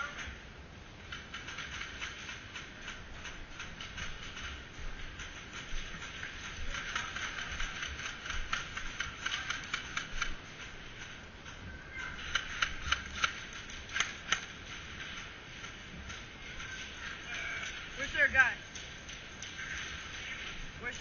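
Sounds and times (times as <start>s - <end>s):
sharp clicks and taps: 12.2s - 19.8s.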